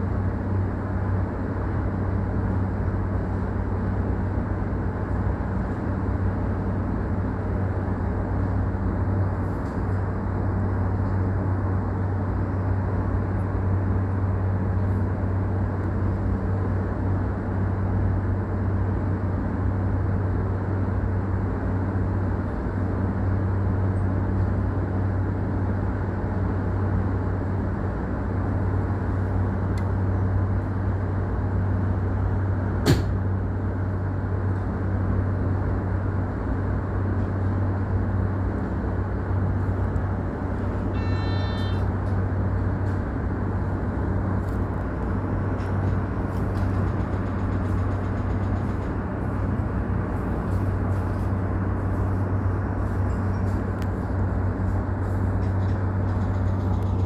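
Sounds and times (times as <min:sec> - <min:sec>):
train interior hum: 0:00.0 - 0:57.0
sharp click: 0:32.9 - 0:33.2
high ringing tone: 0:40.9 - 0:41.9.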